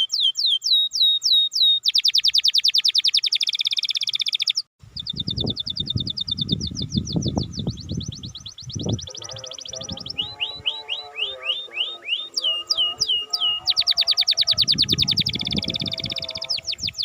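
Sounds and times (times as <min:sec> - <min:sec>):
canary singing trills: 0:00.0 - 0:17.0.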